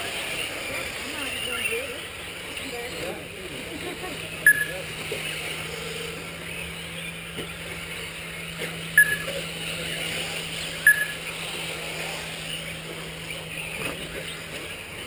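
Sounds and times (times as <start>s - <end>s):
rc cars whining: 0.0s - 15.0s
short electronic beeps: 4.4s - 4.8s, 9.0s - 9.4s, 10.8s - 11.2s.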